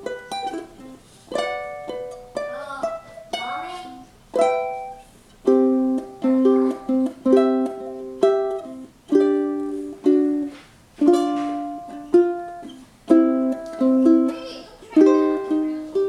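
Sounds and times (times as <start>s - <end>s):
ukulele strummed chords: 0.0s - 16.0s.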